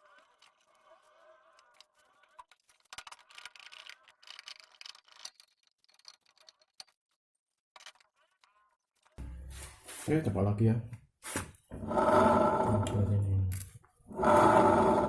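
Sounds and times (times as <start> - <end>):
faint wheel whirr: 11.8 - 13.1, 14.1 - 15.0.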